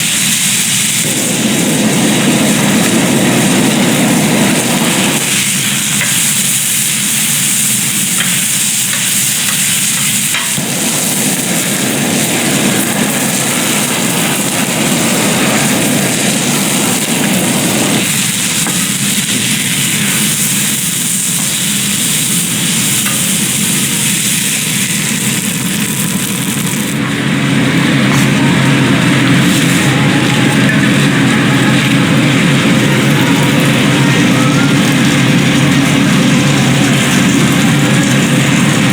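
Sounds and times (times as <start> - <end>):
food sizzling in hot oil: 0.0 - 38.9.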